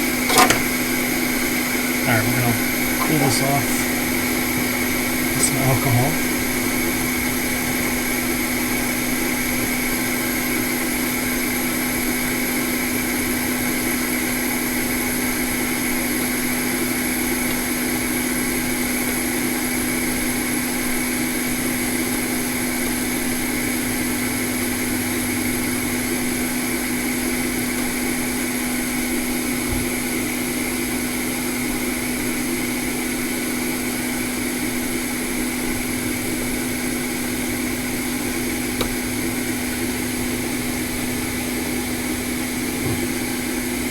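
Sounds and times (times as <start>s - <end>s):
electric blower fan whirring: 0.0s - 43.9s.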